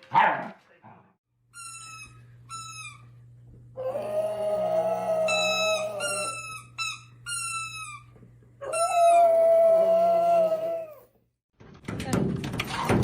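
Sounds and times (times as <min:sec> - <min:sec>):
dog howling: 0:03.8 - 0:06.5, 0:08.6 - 0:11.2.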